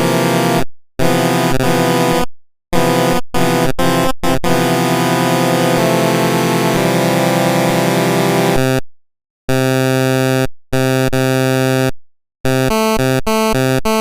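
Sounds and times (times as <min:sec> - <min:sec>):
buzzy harsh synthesizer chords: 0:00.0 - 0:08.8.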